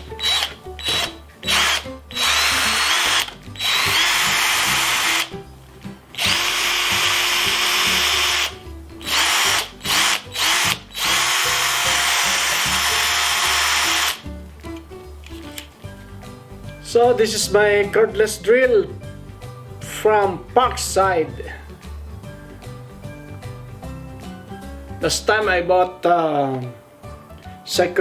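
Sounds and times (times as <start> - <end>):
cordless drill motor whining: 0.0 - 5.4, 6.1 - 14.2.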